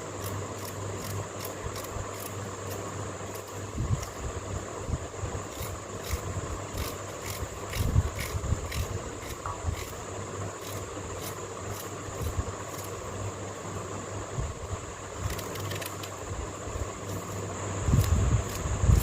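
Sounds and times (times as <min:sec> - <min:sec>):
crickets chirping: 0:00.0 - 0:19.0
high insect drone: 0:00.0 - 0:19.0
low steady hum: 0:00.0 - 0:19.0
wind rumbling on microphone: 0:03.6 - 0:10.0, 0:12.1 - 0:12.6, 0:14.3 - 0:15.4, 0:17.7 - 0:19.0.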